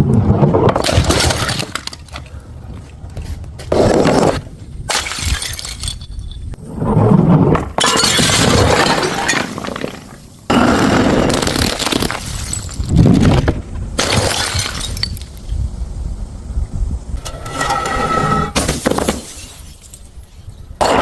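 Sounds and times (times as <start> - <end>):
glass bottles smashing: 4.9 - 6.6, 7.8 - 10.1, 11.3 - 12.9, 14.0 - 15.2, 18.6 - 21.0.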